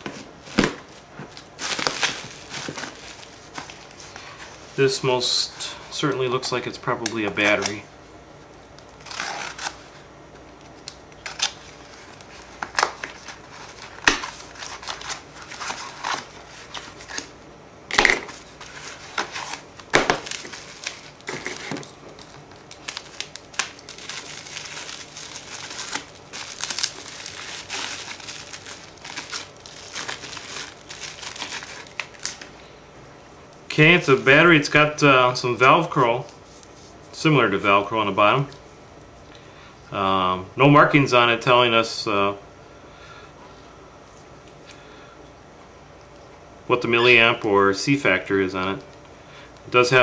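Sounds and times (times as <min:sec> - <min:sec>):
packaging crinkling and tearing: 0:00.4 - 0:04.6, 0:08.7 - 0:10.0, 0:10.6 - 0:17.3, 0:17.9 - 0:32.5.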